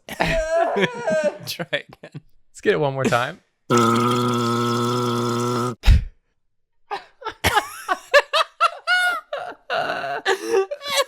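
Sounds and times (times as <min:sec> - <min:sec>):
people laughing: 0:07.5 - 0:11.0.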